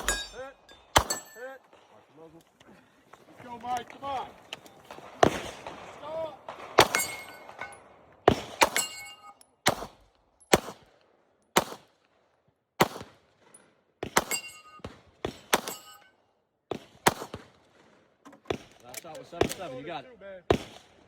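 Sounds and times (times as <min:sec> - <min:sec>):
ringing steel target hit: 0:00.0 - 0:01.4
gunshots: 0:00.0 - 0:01.5, 0:04.9 - 0:10.9, 0:11.6 - 0:11.9, 0:12.8 - 0:13.2, 0:14.0 - 0:16.0, 0:16.7 - 0:17.7, 0:20.5 - 0:21.0.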